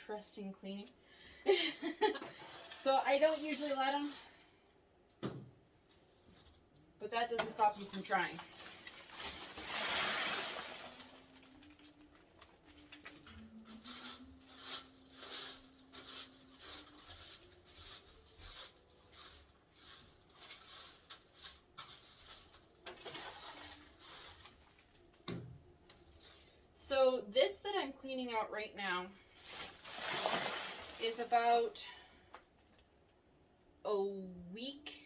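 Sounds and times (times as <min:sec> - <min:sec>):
whisk broom sweeping: 0:02.4 - 0:04.5, 0:13.7 - 0:24.9, 0:29.4 - 0:31.4.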